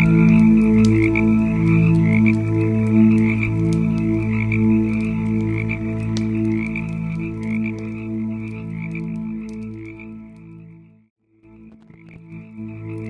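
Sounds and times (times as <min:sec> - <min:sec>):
wood fire crackling: 0:00.0 - 0:10.6
low pulsing drone: 0:00.0 - 0:10.8.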